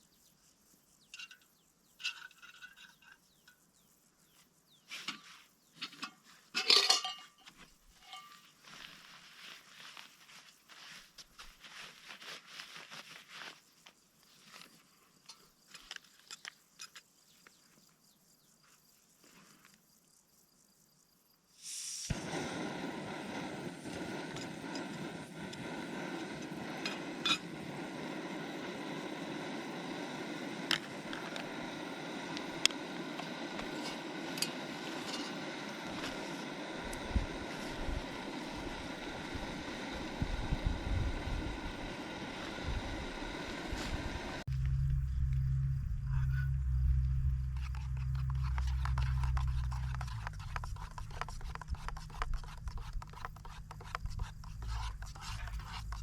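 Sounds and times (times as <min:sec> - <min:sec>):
crackling rustles: 0:04.9 - 0:17.5
strong wind blowing: 0:35.4 - 0:51.2.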